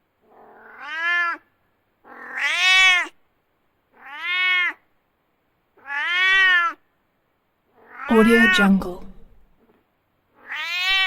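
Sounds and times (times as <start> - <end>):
cat meowing: 0.3 - 3.2, 3.9 - 4.9, 5.8 - 6.8, 7.8 - 9.2, 10.4 - 11.0.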